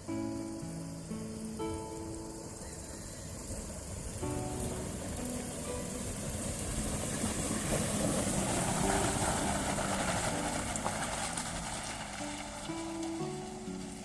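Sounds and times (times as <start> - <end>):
faint music: 0.0 - 14.0
vehicle engine: 3.2 - 14.0.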